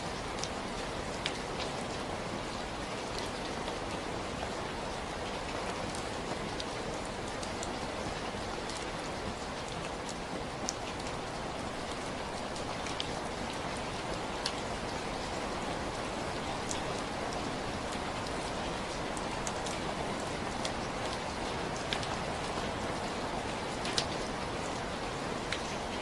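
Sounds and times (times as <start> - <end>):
rain hiss: 0.0 - 26.0
raindrops ticking: 0.2 - 2.0, 5.3 - 26.0.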